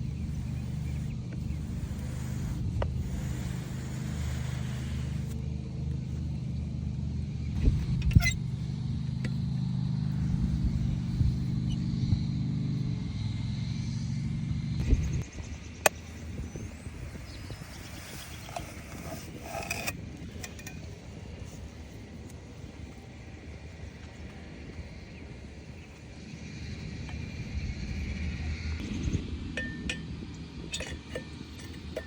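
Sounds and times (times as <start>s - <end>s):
vehicle engine running: 0.0s - 30.6s.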